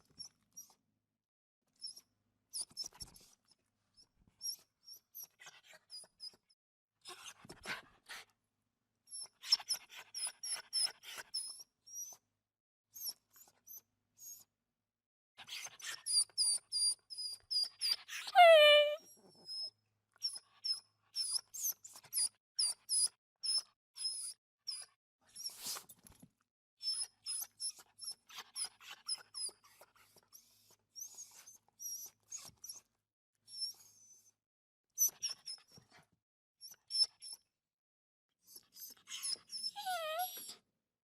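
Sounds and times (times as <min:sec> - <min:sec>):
puppy crying: 0:18.2 - 0:19.0, 0:39.1 - 0:40.6.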